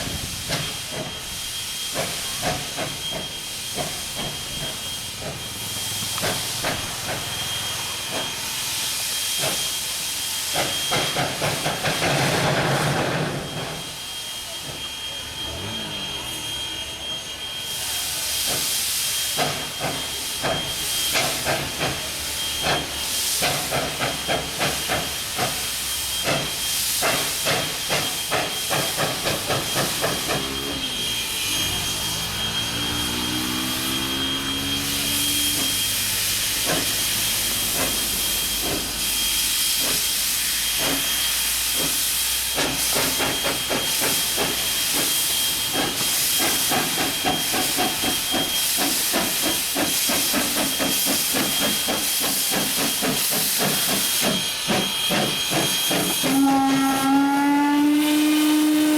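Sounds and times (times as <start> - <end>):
steam hissing: 0.0 - 58.9
steam locomotive chuffing: 0.0 - 58.9
whistle-like bending tone: 25.9 - 52.0.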